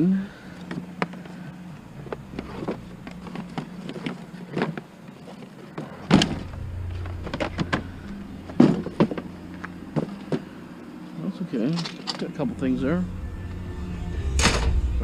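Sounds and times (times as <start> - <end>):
low hum: 0.0 - 15.0
household items knocking and clunking: 5.7 - 10.5
loud thud: 14.3 - 15.0.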